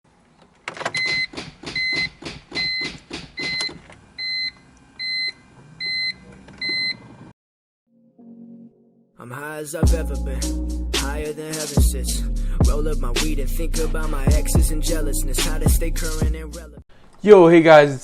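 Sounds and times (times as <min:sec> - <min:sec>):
car warning chime beeping: 0:01.0 - 0:07.0.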